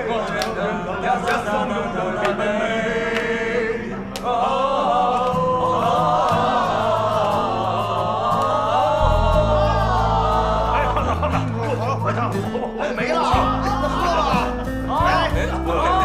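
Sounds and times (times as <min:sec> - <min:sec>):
voices singing together: 0:00.0 - 0:16.0
bass line: 0:09.0 - 0:12.5.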